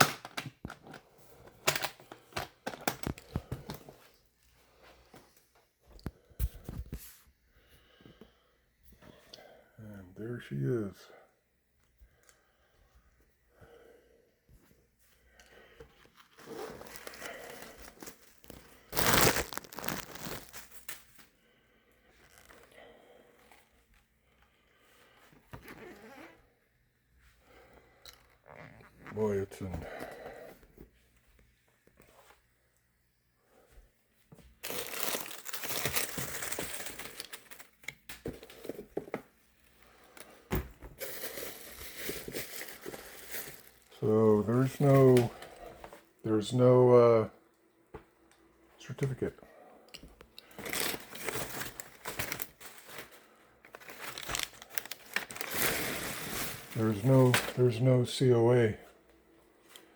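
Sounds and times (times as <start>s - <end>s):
packing material rustling and crinkling: 0.0s - 5.2s, 16.0s - 21.4s, 22.0s - 24.0s, 34.6s - 46.1s, 50.4s - 58.2s.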